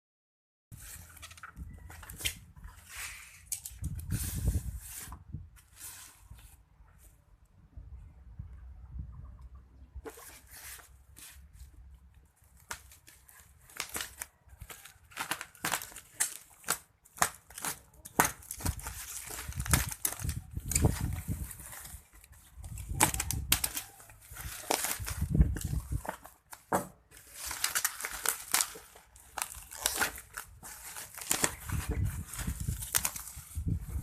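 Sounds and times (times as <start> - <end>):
wrapping tearing and crinkling: 12.3 - 34.0.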